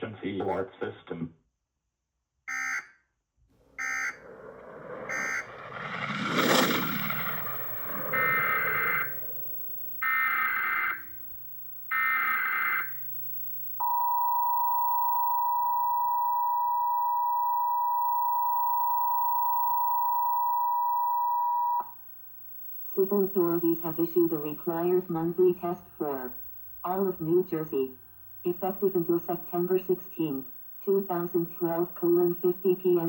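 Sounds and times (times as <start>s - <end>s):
rush of noise: 3.7s - 11.6s
steady attention tone: 3.7s - 33.0s
warbling data bursts: 3.8s - 13.8s.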